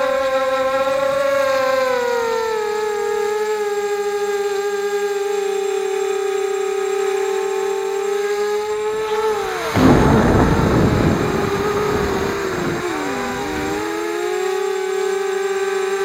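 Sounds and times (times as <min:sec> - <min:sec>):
quadcopter motors whining: 0:00.0 - 0:16.0
loud rushing noise: 0:09.6 - 0:13.9.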